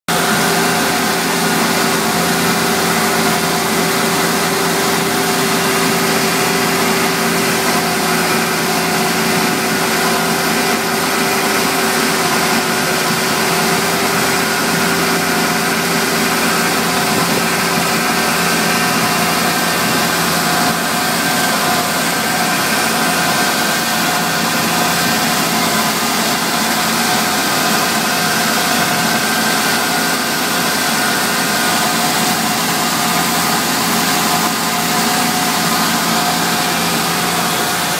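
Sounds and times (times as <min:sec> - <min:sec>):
tractor engine running: 0:00.1 - 0:37.9.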